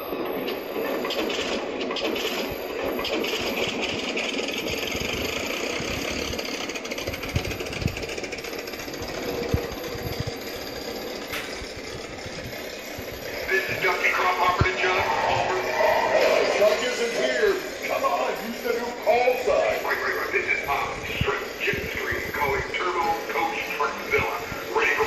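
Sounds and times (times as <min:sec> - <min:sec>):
rattle: 0:01.0 - 0:13.5
plane engine sound effect: 0:02.5 - 0:25.0.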